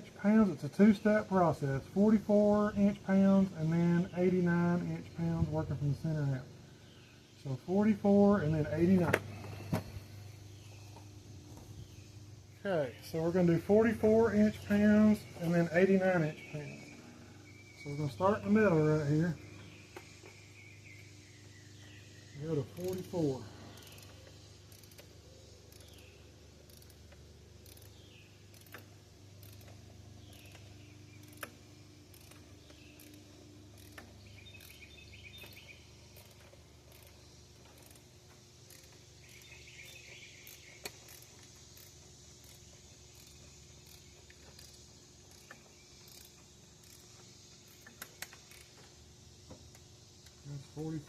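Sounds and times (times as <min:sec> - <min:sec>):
torque wrench ratcheting: 0:22.4 - 0:48.9
sharp wrench clicks: 0:23.8 - 0:48.9.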